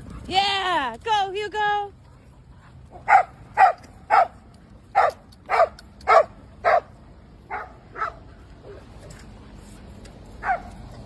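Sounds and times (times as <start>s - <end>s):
dog barking: 3.0s - 6.9s, 7.5s - 8.2s, 10.4s - 10.7s.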